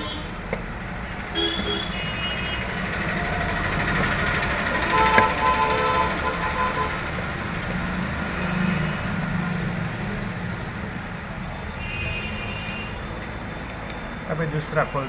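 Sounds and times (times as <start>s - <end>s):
low engine hum: 0.0s - 11.7s
road traffic passing: 0.0s - 15.0s.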